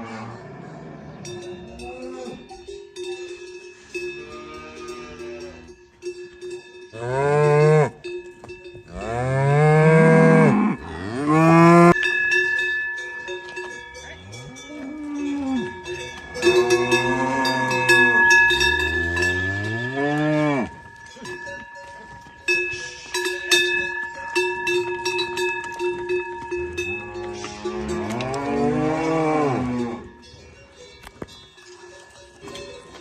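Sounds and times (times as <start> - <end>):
cowbells ringing: 1.1 - 33.0
cattle mooing: 8.9 - 12.0, 14.2 - 20.8, 26.8 - 30.1.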